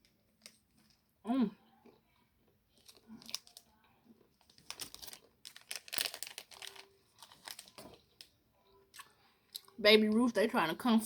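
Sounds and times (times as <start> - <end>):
wrapper tearing and crinkling: 2.8 - 3.7, 4.4 - 8.3.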